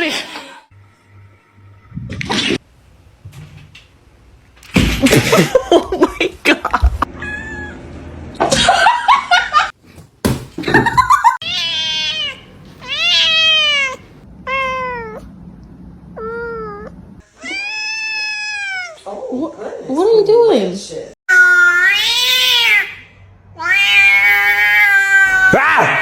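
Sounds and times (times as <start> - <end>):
cat meowing: 11.4 - 15.3, 16.2 - 19.0, 21.3 - 23.0, 23.6 - 25.6.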